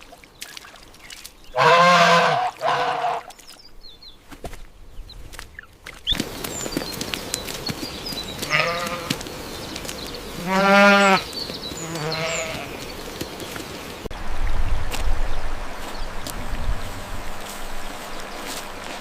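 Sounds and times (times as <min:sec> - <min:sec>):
farm animal bleating: 0:01.6 - 0:03.3, 0:08.4 - 0:09.2, 0:10.4 - 0:12.8
loud low rumbling: 0:14.1 - 0:19.0.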